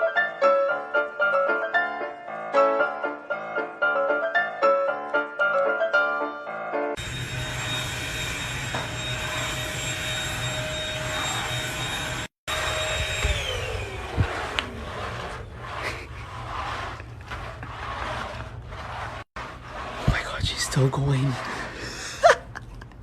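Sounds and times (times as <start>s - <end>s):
electric motor whining: 7.0s - 17.4s.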